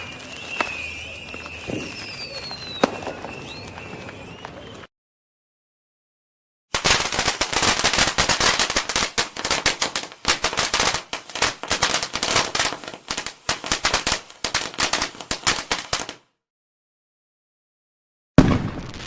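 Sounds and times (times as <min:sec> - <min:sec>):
firecrackers crackling: 0:00.0 - 0:04.9, 0:06.7 - 0:16.2, 0:18.4 - 0:19.0.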